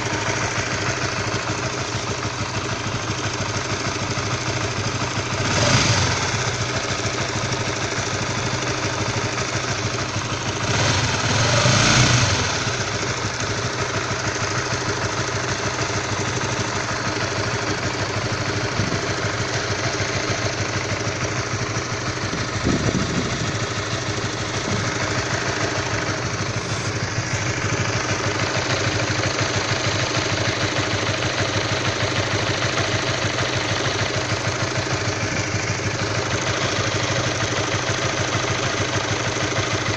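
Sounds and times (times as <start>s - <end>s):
motorcycle engine idling roughly: 0.0s - 39.9s
engine throttle blips: 15.9s - 29.0s.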